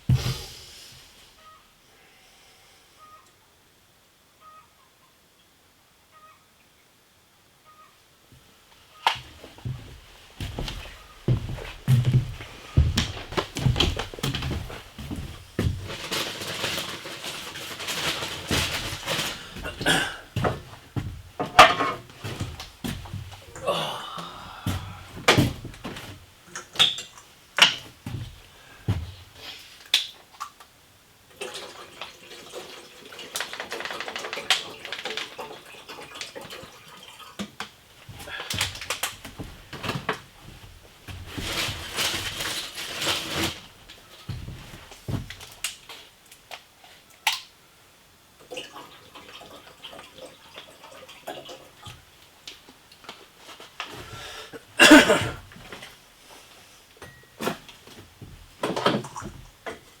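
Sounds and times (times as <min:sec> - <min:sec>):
scraping and rustling: 0:09.2 - 0:23.5, 0:38.0 - 0:46.1.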